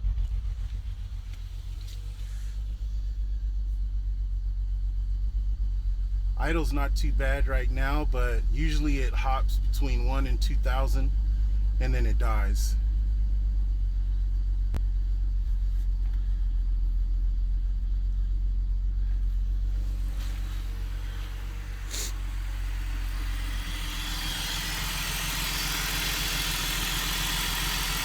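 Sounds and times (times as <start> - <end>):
car engine idling: 0.0 - 28.0
loud hiss: 19.7 - 28.0.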